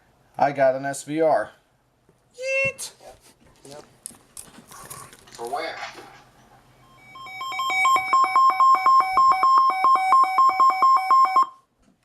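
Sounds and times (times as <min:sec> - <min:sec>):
radio alert alarm beeping: 0:06.9 - 0:11.6.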